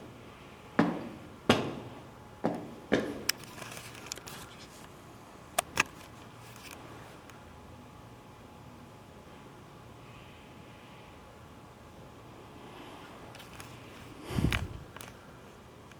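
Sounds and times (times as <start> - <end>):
sharp knocks: 0.8 - 3.4.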